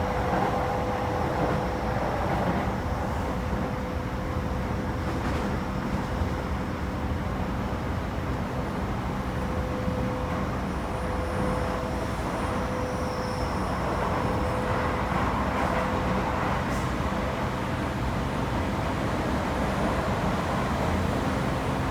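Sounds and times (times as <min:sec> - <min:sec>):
train wheels rumbling on rail: 0:00.0 - 0:21.9.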